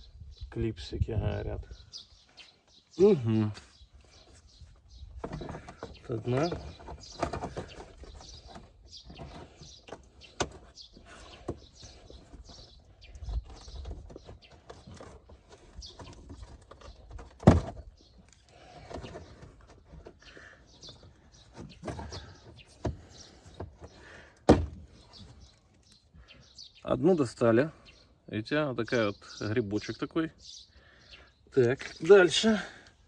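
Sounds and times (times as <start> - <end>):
scraping and rustling: 3.6 - 26.0.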